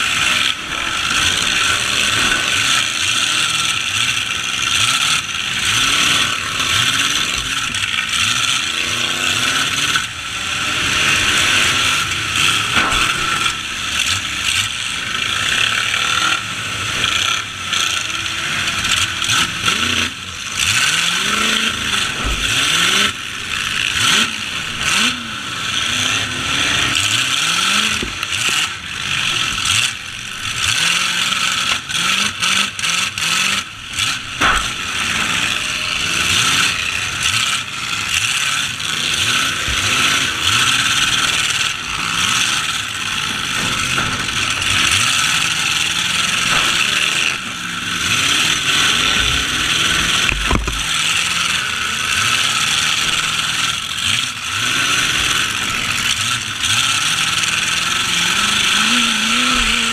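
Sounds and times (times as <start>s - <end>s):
truck engines revving: 0.0s - 59.9s
noisy din: 39.0s - 52.2s
sharp knocks: 50.2s - 50.9s.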